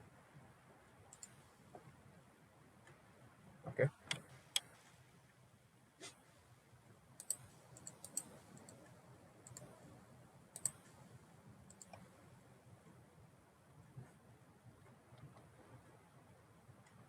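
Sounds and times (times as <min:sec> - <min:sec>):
faint low room hum: 0:00.0 - 0:17.0
computer mouse clicking: 0:01.1 - 0:01.4, 0:07.2 - 0:09.8, 0:10.5 - 0:11.0, 0:11.7 - 0:12.1.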